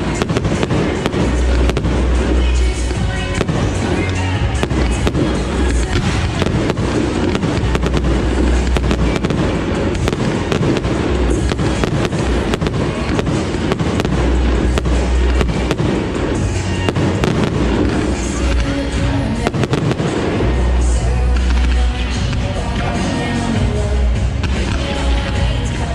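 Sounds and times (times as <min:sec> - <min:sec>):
deep firework booms: 0:00.0 - 0:25.9
fireworks crackling and popping: 0:00.0 - 0:25.9.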